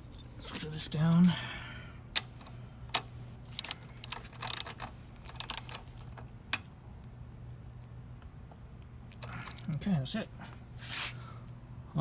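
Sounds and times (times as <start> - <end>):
wrench clicking against metal: 2.2 - 6.7.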